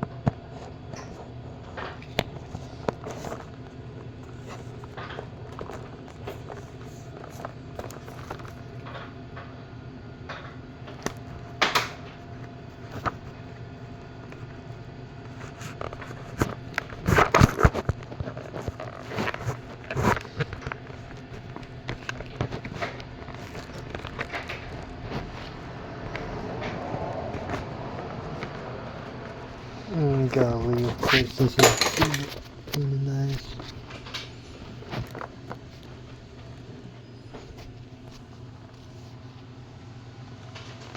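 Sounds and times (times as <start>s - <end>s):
steady low hum: 0.0s - 40.9s
tool set and packaging handled: 30.1s - 35.2s.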